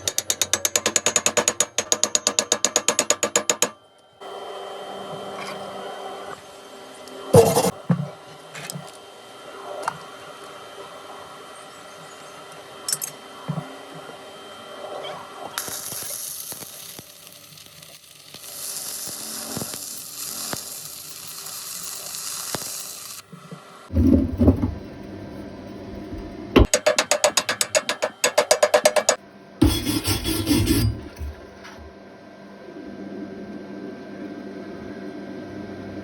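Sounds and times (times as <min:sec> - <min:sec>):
welding arc crackling hiss: 0:15.6 - 0:23.3.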